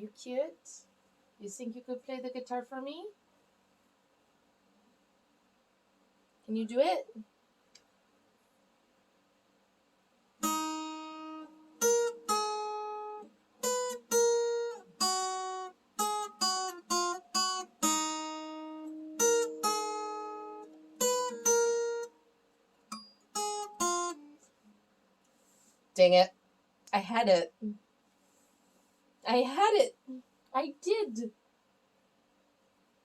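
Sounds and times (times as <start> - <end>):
acoustic guitar picking: 10.4 - 22.2, 22.9 - 24.4.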